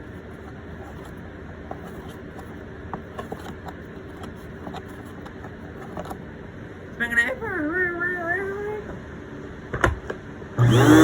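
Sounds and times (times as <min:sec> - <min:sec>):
upright vacuum running: 0:10.5 - 0:11.0.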